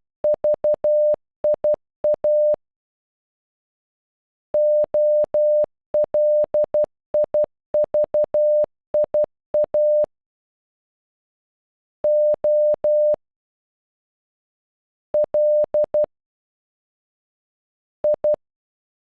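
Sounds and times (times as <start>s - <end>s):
morse code beeps: 0.2s - 2.6s, 4.6s - 10.1s, 12.1s - 13.2s, 15.2s - 16.1s.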